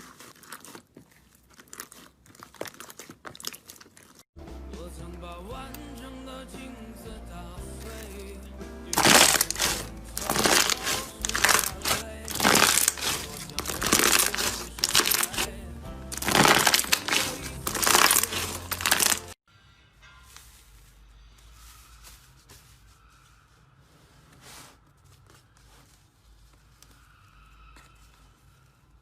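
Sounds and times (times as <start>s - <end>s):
soft background music: 4.4s - 22.2s
slime crackling when squeezed: 9.0s - 15.5s, 16.2s - 19.4s.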